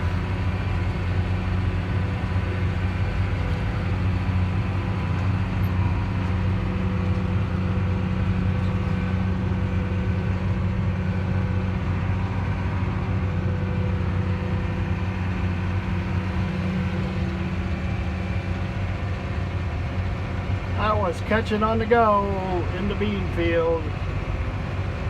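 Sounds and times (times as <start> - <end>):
tractor engine droning: 0.0 - 25.0.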